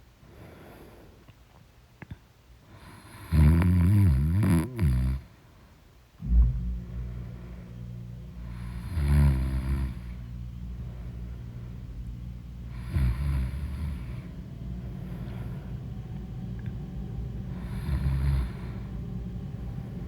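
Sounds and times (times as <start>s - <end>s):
person snoring: 2.8s - 5.3s, 8.4s - 10.2s, 12.7s - 14.3s, 17.6s - 18.9s.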